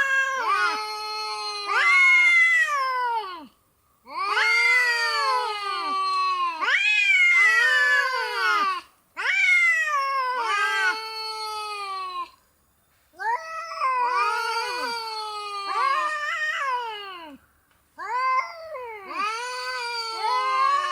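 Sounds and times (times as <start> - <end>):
cat meowing: 4.1 - 12.3.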